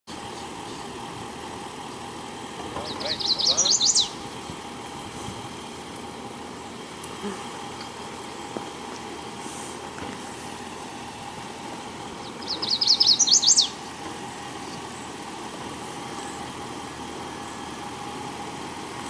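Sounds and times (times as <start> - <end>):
vehicle engine idling: 0.0 - 19.0
songbird trilling: 2.8 - 4.3, 12.1 - 15.2.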